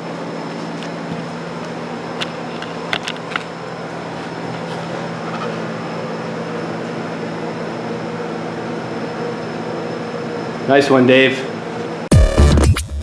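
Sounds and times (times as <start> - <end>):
mechanical hum: 0.0 - 12.6.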